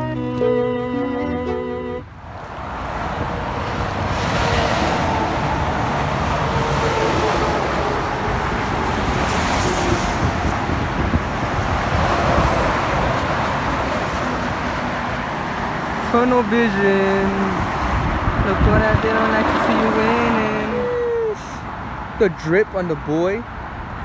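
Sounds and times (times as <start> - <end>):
background music: 0.0 - 2.1
road traffic noise: 0.0 - 24.0.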